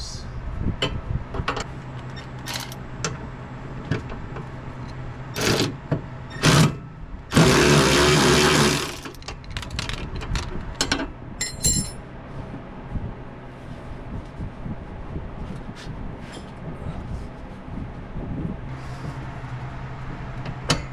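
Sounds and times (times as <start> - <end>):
steady low hum: 0.0 - 20.9
short noisy bursts: 6.4 - 9.2
metal knocks and clinks: 9.5 - 12.0.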